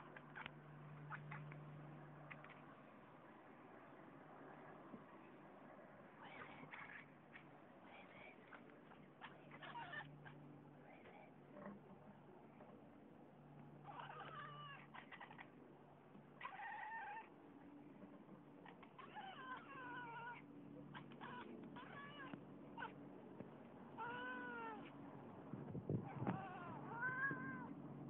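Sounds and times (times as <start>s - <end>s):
cat chattering and chirping: 0.0s - 1.6s, 6.2s - 11.3s, 13.8s - 15.6s, 16.4s - 17.3s, 18.6s - 23.0s, 24.0s - 24.9s.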